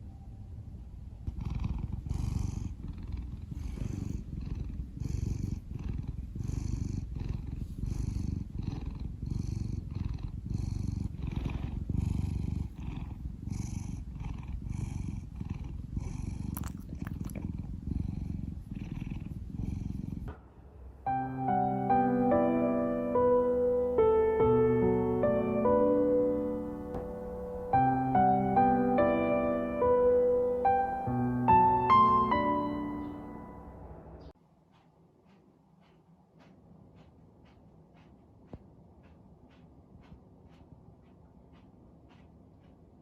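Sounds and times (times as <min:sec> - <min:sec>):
cat purring: 0:00.6 - 0:20.4
soft piano music: 0:21.0 - 0:34.4.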